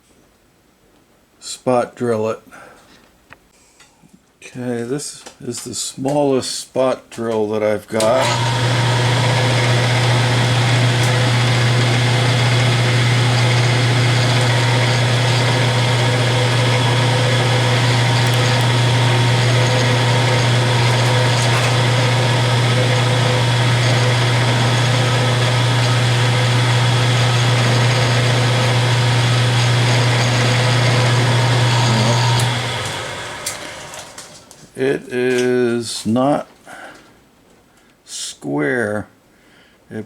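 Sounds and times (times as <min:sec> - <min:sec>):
milling machine spindle humming: 0:08.2 - 0:34.4.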